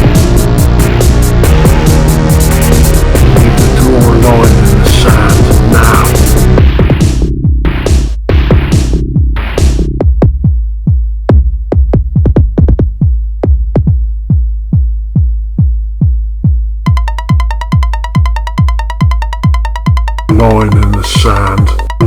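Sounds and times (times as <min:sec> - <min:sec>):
noisy drum machine hits: 0:00.0 - 0:14.0
deep bass pulse: 0:00.0 - 0:22.0
drum machine kick: 0:00.0 - 0:22.0
bright synth line: 0:16.9 - 0:22.0.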